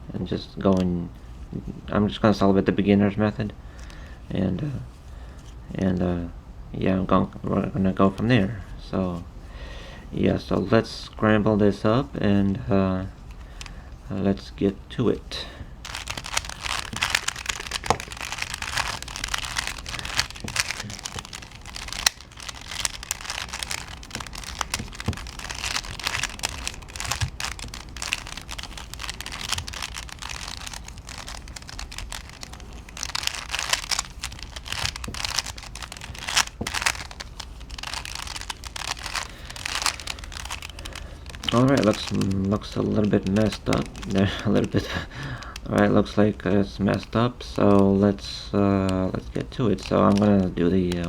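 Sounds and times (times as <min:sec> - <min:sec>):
puzzle cube clicking and rattling: 0:14.4 - 0:48.2, 0:48.8 - 0:51.0.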